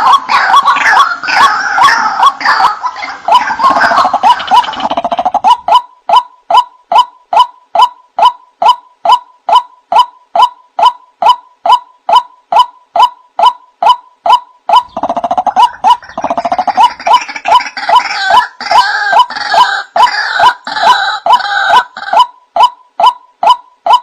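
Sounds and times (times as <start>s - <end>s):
harsh rattling bird calls: 0.0s - 5.8s, 14.2s - 22.2s.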